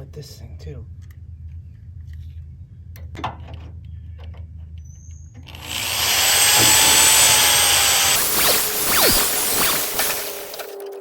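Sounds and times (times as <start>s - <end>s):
power drill boring into metal: 5.5s - 10.8s.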